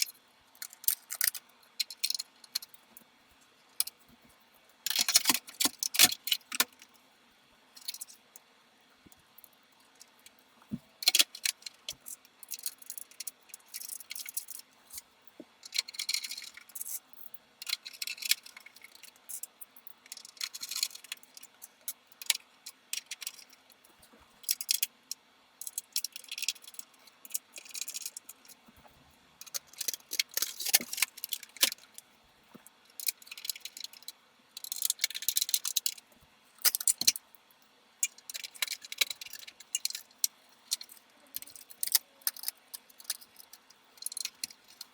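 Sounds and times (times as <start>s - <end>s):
computer parts clinking and rattling: 4.9s - 6.8s, 15.7s - 17.0s, 38.0s - 44.9s.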